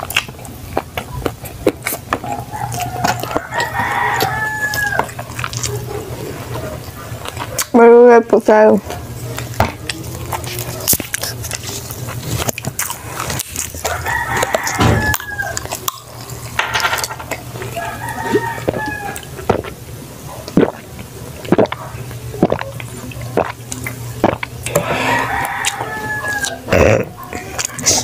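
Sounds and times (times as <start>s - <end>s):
chewing and crunching: 0.0s - 28.0s
rooster crowing: 2.2s - 5.3s, 13.8s - 15.8s, 17.6s - 19.4s, 24.7s - 26.7s.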